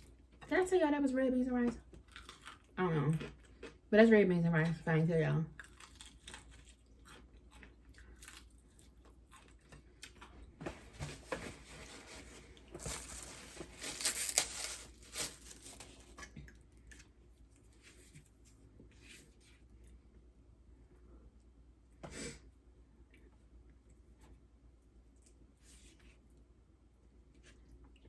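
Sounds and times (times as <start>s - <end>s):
person chewing with wet smacks: 1.8s - 3.9s, 5.5s - 10.5s, 27.3s - 28.0s
crunching and tearing food: 2.0s - 3.8s, 5.6s - 10.3s, 12.4s - 17.7s.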